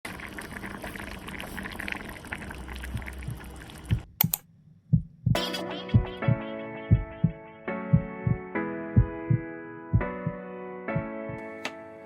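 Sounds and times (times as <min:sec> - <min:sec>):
stew bubbling: 0:00.1 - 0:04.2
background music with thumping beat: 0:04.9 - 0:10.4
low thumps: 0:04.9 - 0:10.4.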